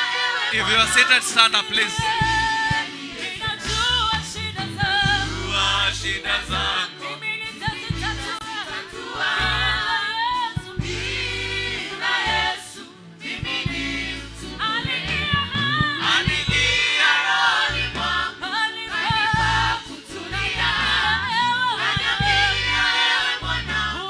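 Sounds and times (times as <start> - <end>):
gospel group singing: 0.0 - 24.0
bass line: 0.5 - 2.8, 3.6 - 6.8, 7.7 - 8.3, 10.6 - 12.5, 13.4 - 16.9, 19.1 - 19.8, 20.4 - 21.4, 22.0 - 24.0.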